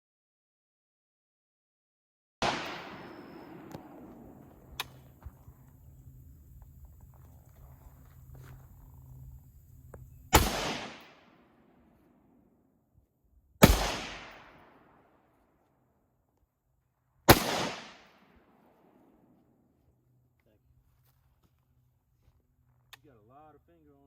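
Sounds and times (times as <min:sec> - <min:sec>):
rifle shots echoing: 0:02.4 - 0:11.8, 0:13.6 - 0:15.2, 0:17.3 - 0:19.1.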